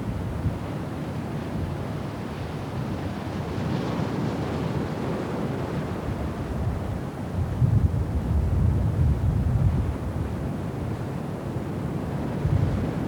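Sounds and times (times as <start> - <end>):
wind blowing on microphone: 3.5 - 13.0.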